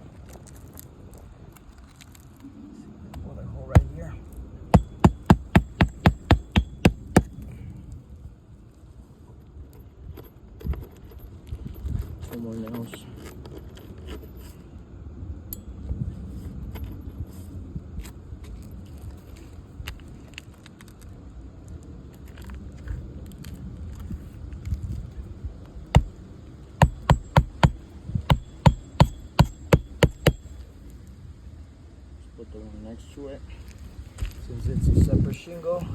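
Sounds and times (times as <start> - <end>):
hammer driving nails into shingles: 3.8 - 4.0, 4.8 - 7.4, 26.0 - 26.2, 26.8 - 30.6.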